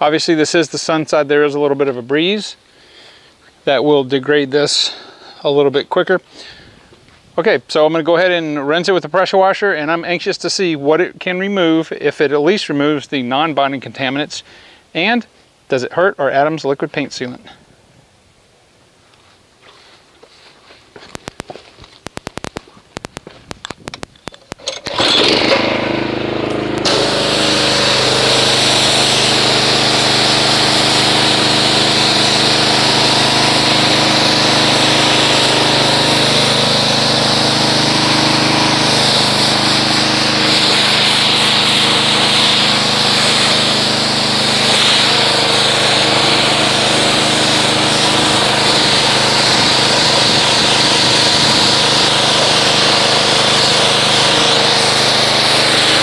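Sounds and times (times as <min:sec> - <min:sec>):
pressure washer running: 0:24.3 - 0:56.0
water spray hissing: 0:26.8 - 0:56.0.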